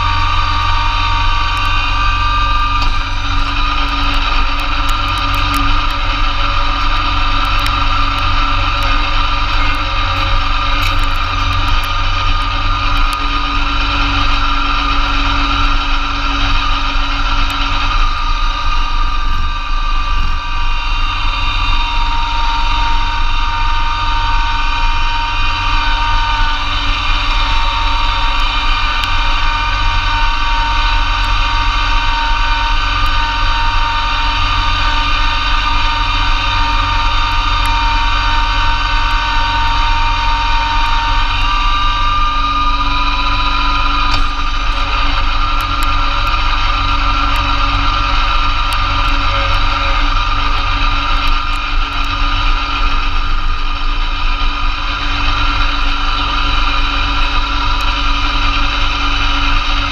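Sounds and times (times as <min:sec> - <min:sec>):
snowblower driveline whine: 0:00.0 - 0:59.9
tractor diesel engine under load: 0:00.0 - 0:59.9.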